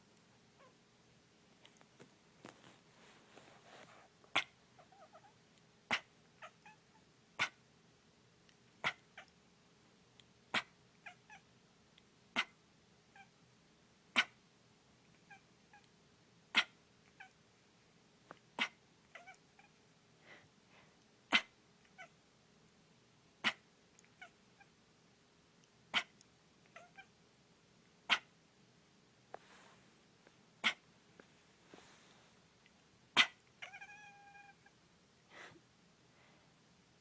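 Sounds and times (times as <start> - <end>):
cat meowing softly: 4.4 - 7.0, 18.6 - 19.8, 26.0 - 27.1, 33.2 - 34.8.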